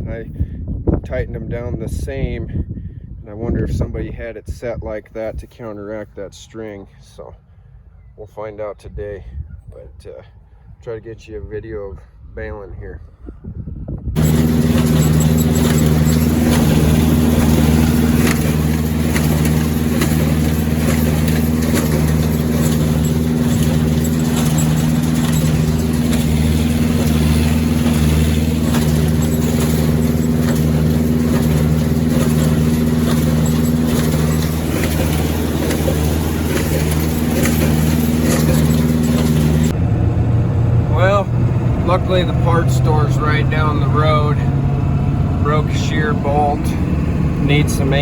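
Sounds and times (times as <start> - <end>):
baler engine running: 14.2 - 48.0.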